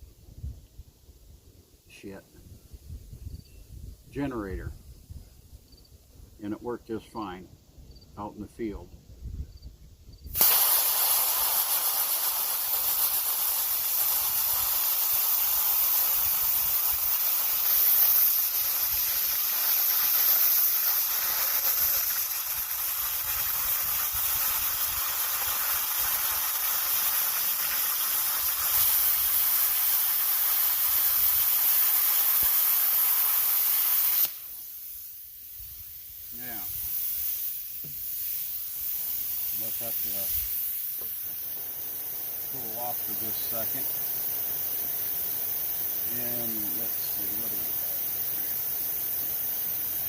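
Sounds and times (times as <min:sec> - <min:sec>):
plasma cutter hissing: 0:10.3 - 0:50.0.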